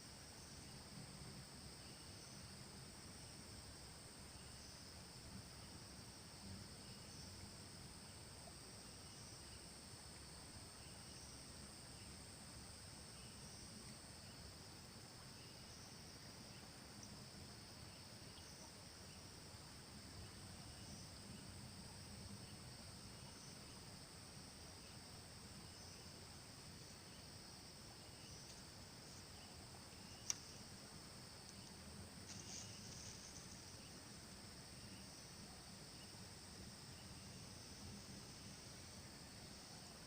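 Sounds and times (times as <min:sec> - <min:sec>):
insect chorus: 0:00.0 - 0:40.0.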